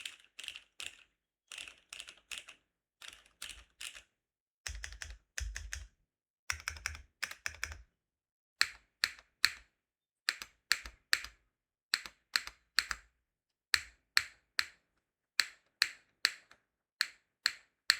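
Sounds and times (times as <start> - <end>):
mechanical keyboard typing: 0.0 - 4.1, 4.7 - 5.9, 6.5 - 7.8.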